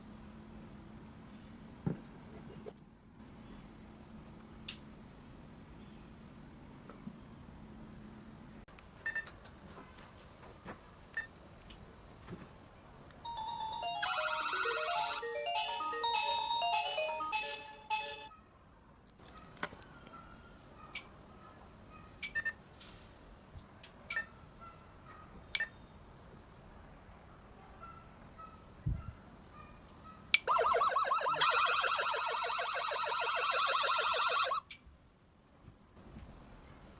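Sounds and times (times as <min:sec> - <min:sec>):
warbling siren alarm tone: 0:13.3 - 0:18.1, 0:30.5 - 0:34.6
electronic chime tune: 0:13.3 - 0:18.3.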